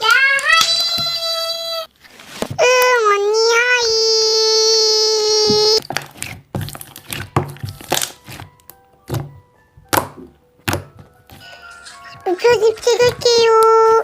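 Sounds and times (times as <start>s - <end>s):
child saying hi: 0.0s - 1.9s
faint music: 0.0s - 14.0s.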